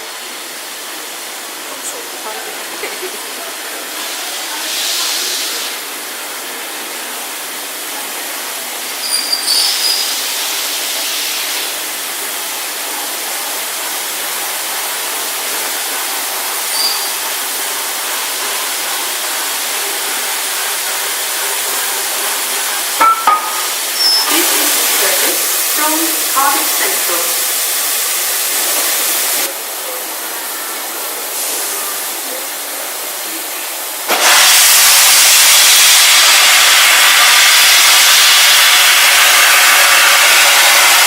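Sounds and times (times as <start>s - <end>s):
steam locomotive hissing: 0.0s - 41.0s
high squeaks: 9.0s - 10.1s, 23.6s - 24.4s.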